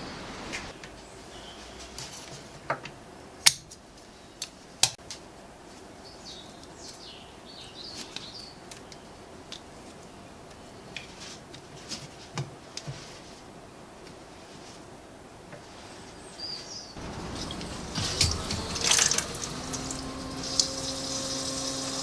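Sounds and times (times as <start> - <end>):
birds chirping faintly: 0.0 - 22.0.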